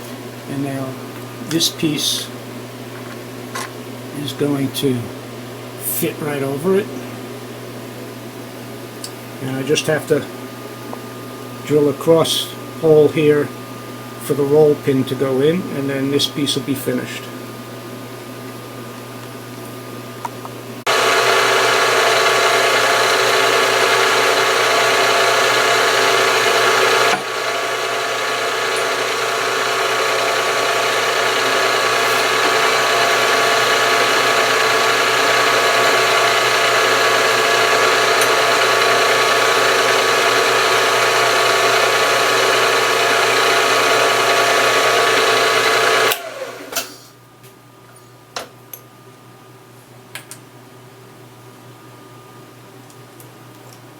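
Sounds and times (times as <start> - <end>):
machine tool gears whining: 20.9 - 46.7.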